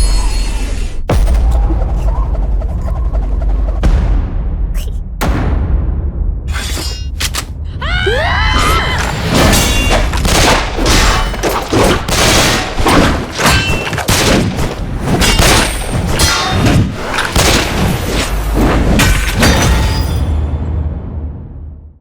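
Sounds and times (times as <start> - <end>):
action sound effects booms and impacts: 0.0 - 6.5.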